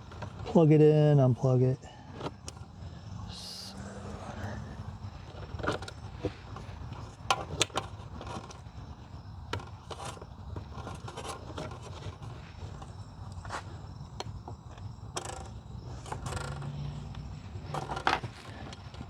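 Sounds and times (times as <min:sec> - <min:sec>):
light scraping: 0:15.2 - 0:19.0.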